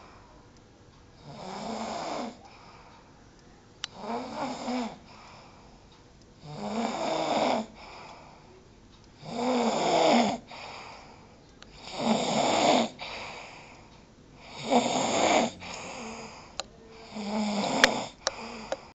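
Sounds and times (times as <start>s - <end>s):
soft breath out: 2.4s - 3.2s, 5.0s - 5.9s, 7.7s - 8.6s, 10.5s - 11.4s, 13.0s - 14.6s, 15.4s - 17.2s, 18.0s - 19.0s
person snoring loudly: 4.0s - 5.0s, 6.4s - 7.8s, 9.2s - 10.6s, 11.8s - 13.3s, 14.4s - 18.8s
sharp clicks: 17.8s - 18.9s.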